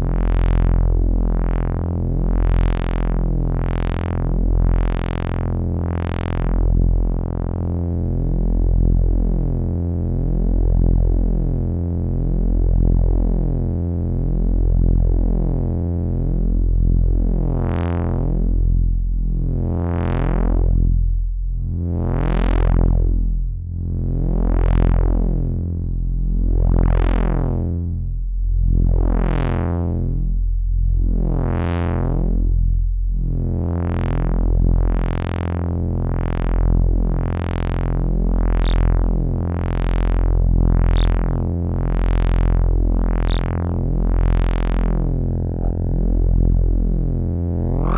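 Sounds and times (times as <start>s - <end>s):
low buzzy synth note: 43.1s - 47.9s.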